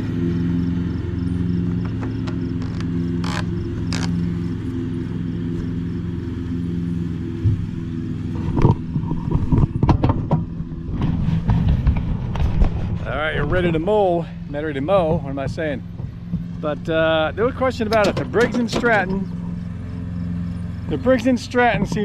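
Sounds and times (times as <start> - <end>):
lawn tractor engine idling: 0.0 - 9.8, 13.0 - 22.0
sharp knocks and clatter: 7.4 - 13.8, 14.9 - 22.0.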